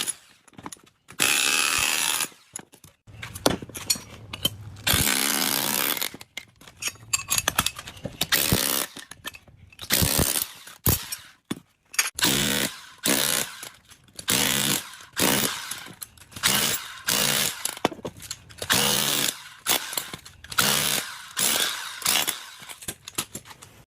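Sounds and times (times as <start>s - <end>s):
power tool motor bursts: 14.3s - 17.8s.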